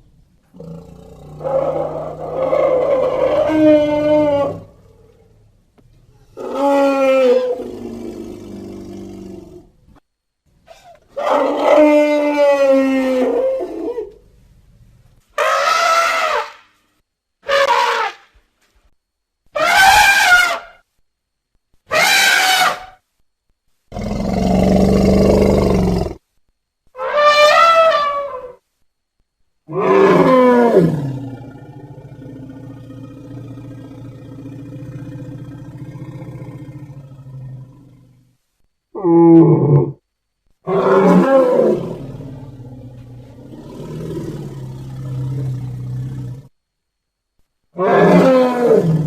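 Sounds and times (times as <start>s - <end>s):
elephant low roar: 0.5s - 5.2s, 6.2s - 9.7s, 23.9s - 26.2s, 29.7s - 38.3s, 39.0s - 40.0s, 40.6s - 46.5s, 47.8s - 49.0s
elephant trumpeting: 1.4s - 4.8s, 15.4s - 16.7s, 17.4s - 18.2s, 19.6s - 20.8s, 21.9s - 23.0s, 27.0s - 28.6s, 47.8s - 49.0s.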